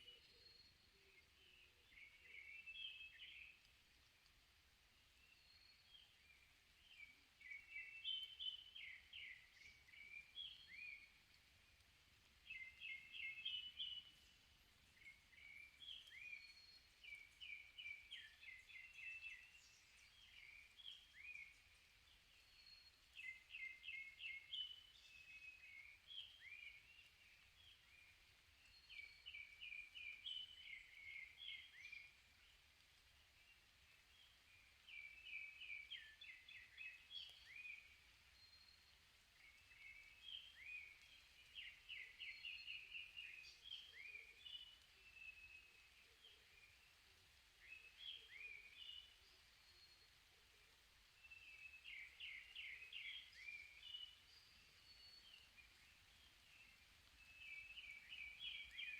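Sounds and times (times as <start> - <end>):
faint forest birds singing: 0.0 - 58.9.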